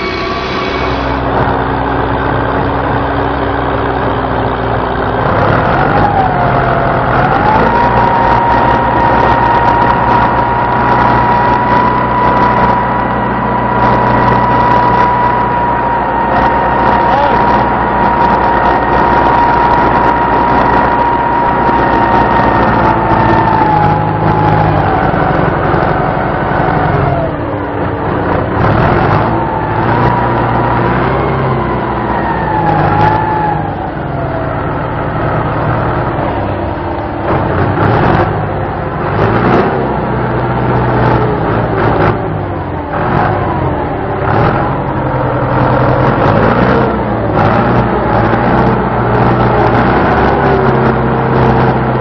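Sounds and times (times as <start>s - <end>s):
high steady whine: 0.0s - 39.2s
car engine revving: 0.0s - 52.0s.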